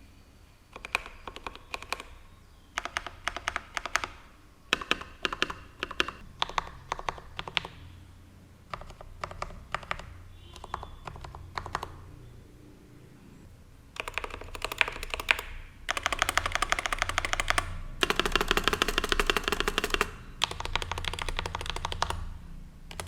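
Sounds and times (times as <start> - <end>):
mechanical keyboard keystroke clacks: 0.8 - 2.1, 2.8 - 7.8, 8.7 - 12.0, 14.0 - 22.2.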